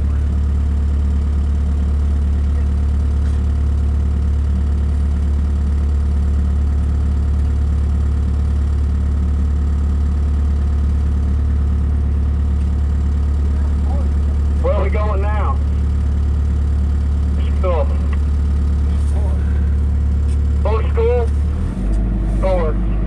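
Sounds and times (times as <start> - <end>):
engine idling: 0.0 - 23.0.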